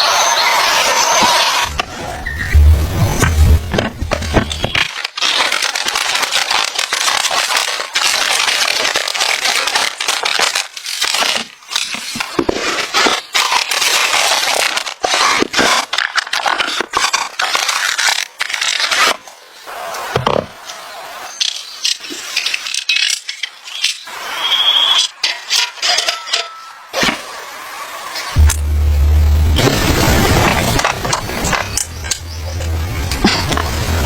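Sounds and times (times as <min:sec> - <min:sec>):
stiff material crunching: 0:28.4 - 0:34.0.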